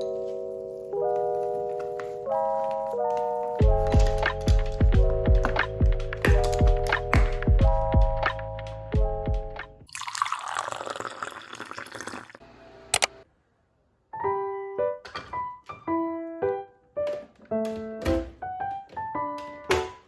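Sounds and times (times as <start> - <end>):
soft piano-like notes: 0.0 - 9.5, 14.2 - 20.0.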